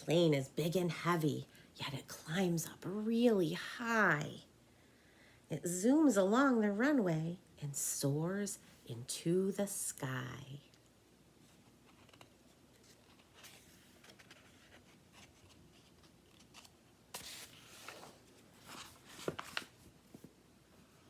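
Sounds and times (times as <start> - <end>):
paper pages rustling: 11.4 - 20.4.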